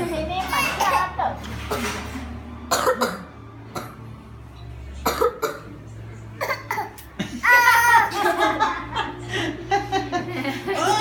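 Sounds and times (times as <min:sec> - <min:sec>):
child fake coughing: 0:00.6 - 0:02.0, 0:02.7 - 0:04.0, 0:05.1 - 0:05.7, 0:06.4 - 0:08.1.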